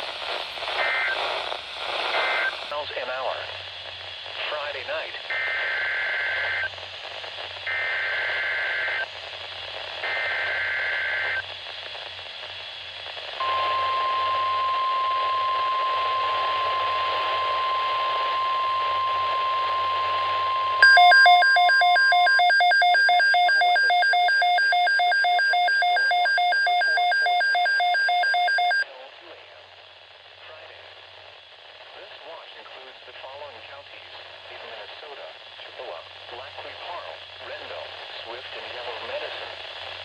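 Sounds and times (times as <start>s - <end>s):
steady alarm tone: 13.4s - 28.8s
digital data bursts: 20.8s - 28.8s
electronic alarm beeping rapidly: 20.8s - 28.8s.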